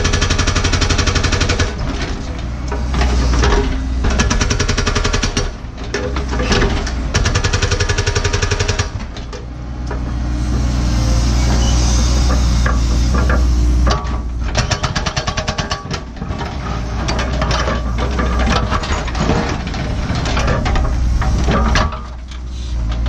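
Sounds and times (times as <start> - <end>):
excavator diesel engine running: 0.0 - 23.0
hydraulic rock hammer pounding rock: 12.2 - 16.2.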